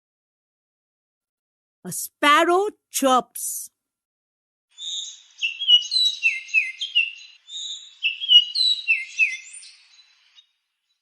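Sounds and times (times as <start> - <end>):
sparrow chirping: 4.7 - 11.0.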